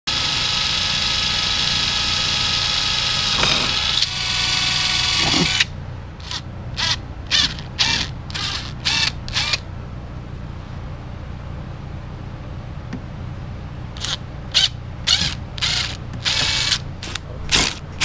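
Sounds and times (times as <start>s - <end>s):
electric drill whining: 0.1s - 9.6s, 14.0s - 17.8s
short drill bursts: 0.1s - 9.6s, 14.0s - 18.0s.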